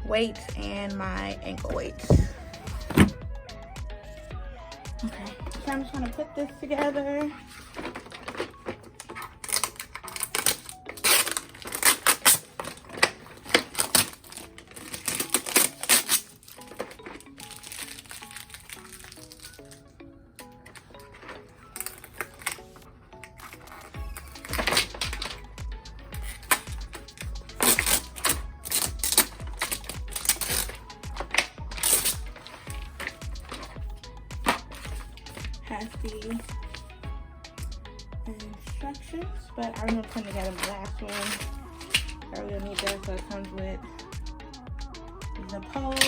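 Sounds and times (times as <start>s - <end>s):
faint background music: 0.0s - 46.0s
shelf parts clinking and clattering: 5.1s - 19.6s.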